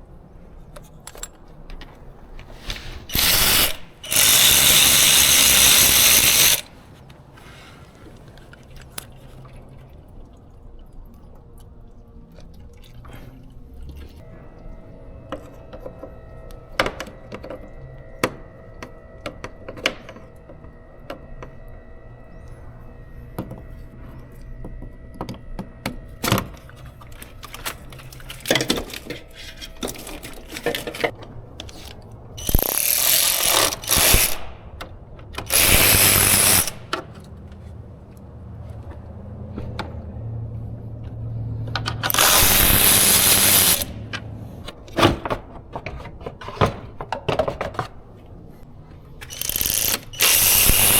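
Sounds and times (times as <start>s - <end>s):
power tool running: 2.6s - 6.7s, 32.4s - 34.6s, 35.4s - 36.9s, 42.1s - 44.1s, 49.2s - 50.9s.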